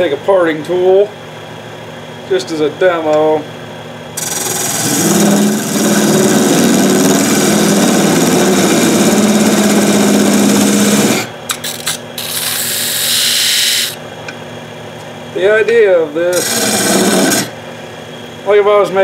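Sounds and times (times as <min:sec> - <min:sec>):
tool scraping spinning wood: 0:04.2 - 0:14.0.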